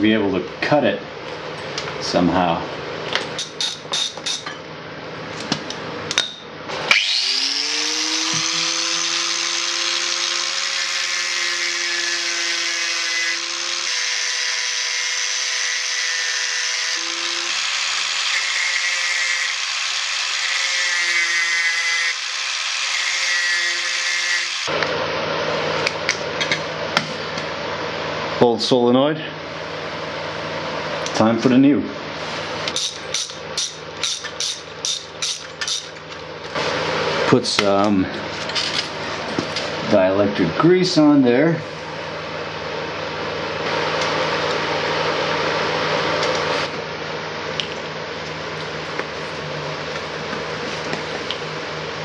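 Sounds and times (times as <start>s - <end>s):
power tool spinning: 6.9s - 24.7s.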